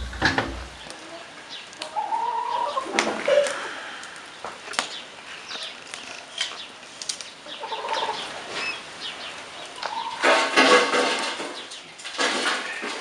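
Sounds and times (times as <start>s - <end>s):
burst of noise: 0.0s - 0.9s
chickens clucking: 0.0s - 3.7s, 7.4s - 8.8s, 9.6s - 13.0s.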